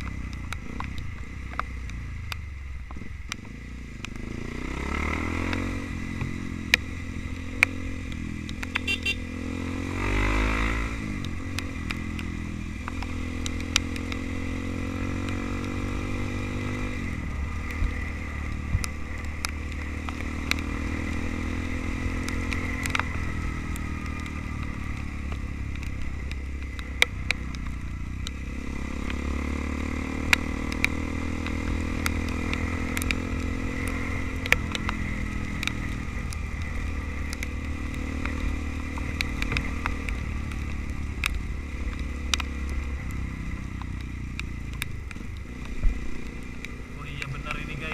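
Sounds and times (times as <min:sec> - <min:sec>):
motorcycle engine revving: 0:00.0 - 0:47.9
sharp clicks and knocks: 0:30.3 - 0:47.9.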